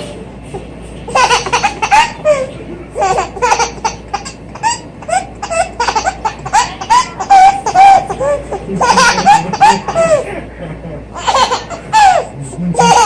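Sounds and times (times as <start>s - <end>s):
young child laughing: 5.6s - 13.0s.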